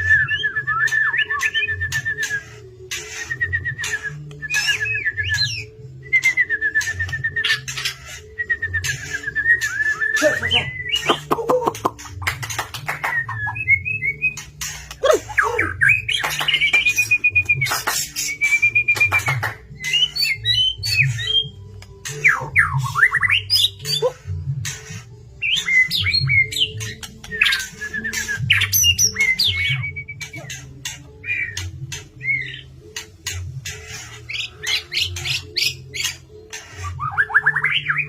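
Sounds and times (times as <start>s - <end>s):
low background music: 0.0s - 38.0s
songbird whistles and trills: 0.0s - 38.0s.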